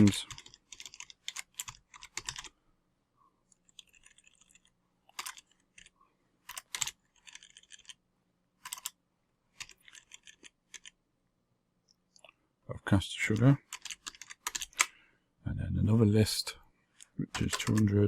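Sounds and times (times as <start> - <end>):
computer keyboard typing: 0.0 - 2.5, 3.5 - 5.9, 6.5 - 8.0, 8.6 - 9.0, 9.6 - 11.0, 13.3 - 14.9, 17.3 - 18.0.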